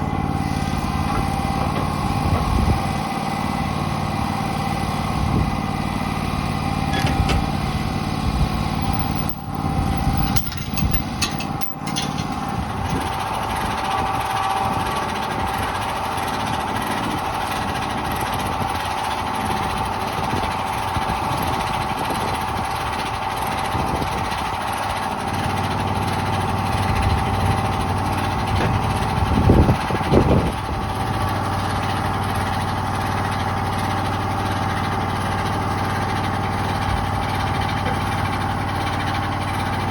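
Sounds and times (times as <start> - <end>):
deeper hum: 0.0 - 18.8
sawmill engine droning with whine: 0.0 - 39.9.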